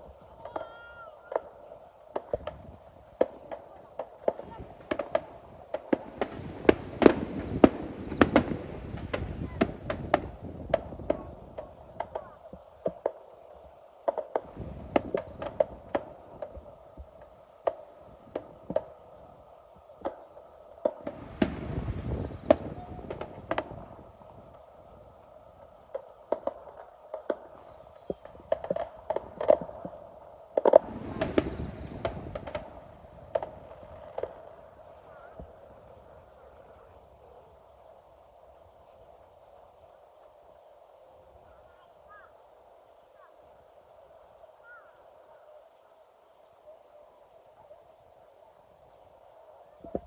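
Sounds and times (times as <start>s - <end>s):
fireworks pops and crackles: 0.0s - 37.6s, 49.6s - 50.0s.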